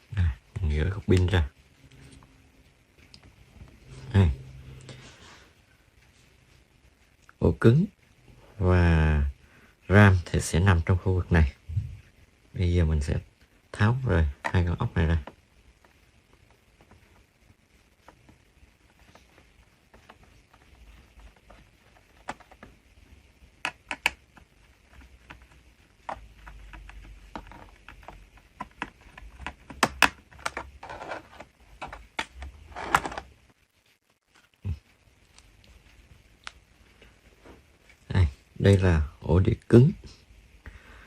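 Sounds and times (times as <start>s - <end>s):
plastic cover scraping: 26.1s - 33.3s.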